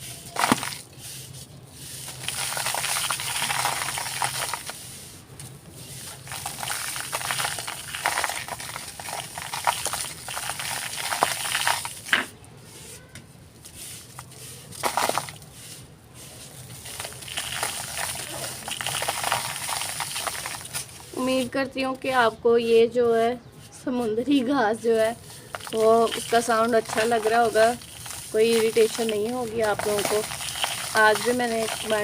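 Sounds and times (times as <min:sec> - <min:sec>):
hands crumbling dry block: 0:00.3 - 0:00.8, 0:02.0 - 0:04.8, 0:06.0 - 0:12.3, 0:14.0 - 0:15.4, 0:16.8 - 0:21.1, 0:25.2 - 0:32.0.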